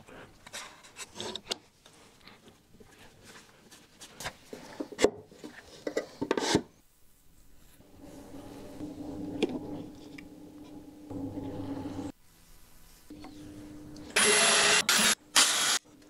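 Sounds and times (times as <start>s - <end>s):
small motor humming: 13.1s - 15.8s.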